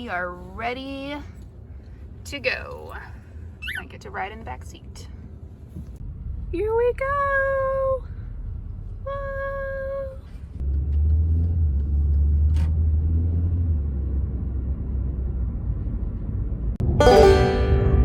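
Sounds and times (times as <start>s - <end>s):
car engine and road rumble: 0.0s - 17.0s
steady pitched tone: 16.8s - 18.0s.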